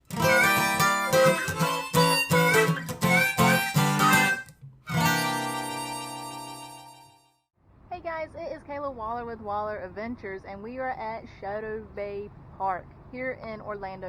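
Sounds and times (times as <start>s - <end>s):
strummed acoustic guitar: 0.0s - 7.0s
harmonica: 0.0s - 7.2s.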